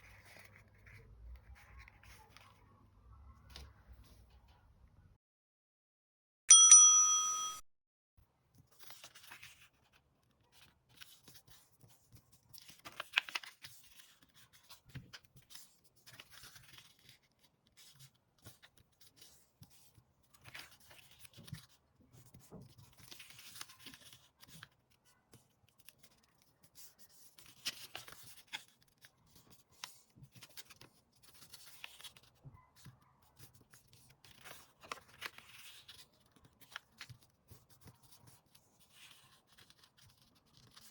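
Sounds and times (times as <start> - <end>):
paper rustling and creasing: 8.7 - 24.8, 25.8 - 40.9.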